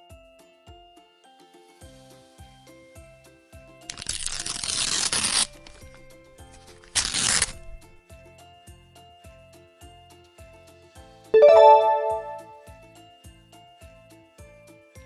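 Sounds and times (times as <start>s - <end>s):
background music: 11.4s - 12.6s.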